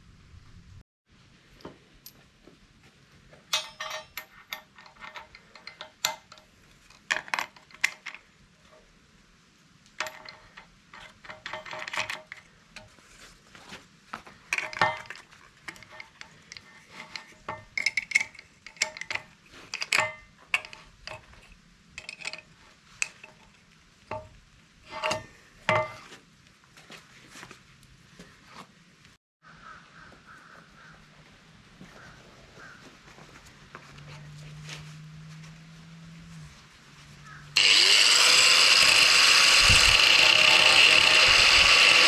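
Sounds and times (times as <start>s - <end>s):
heavy steel pieces clanking: 3.6s - 6.4s.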